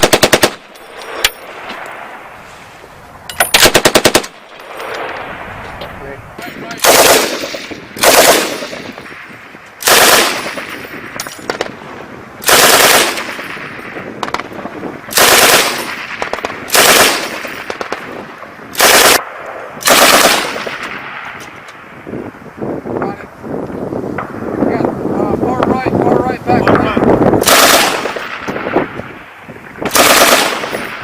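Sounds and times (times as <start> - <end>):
machine gun bursts with echo: 0.0 - 0.8, 3.5 - 4.8, 6.8 - 9.0, 9.8 - 10.8, 12.4 - 14.5, 15.1 - 19.2, 19.8 - 21.2, 27.4 - 28.6, 29.9 - 31.0.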